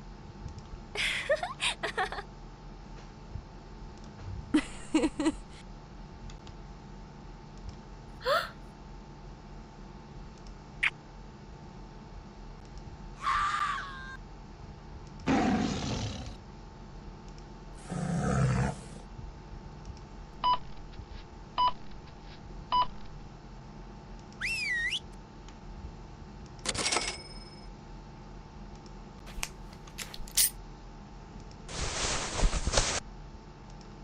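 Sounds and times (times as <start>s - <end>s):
swooping whistle: 24.4s - 25.1s.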